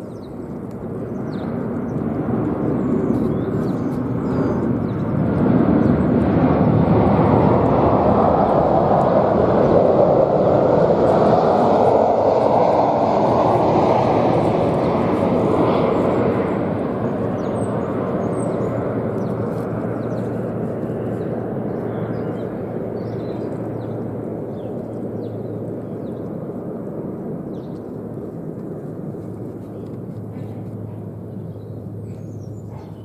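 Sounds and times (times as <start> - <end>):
aircraft roar overhead: 0.0 - 33.0.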